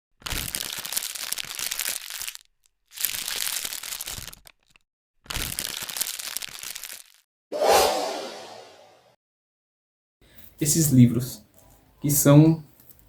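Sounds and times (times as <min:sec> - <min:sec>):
package wrapping crinkling: 0:00.2 - 0:07.2.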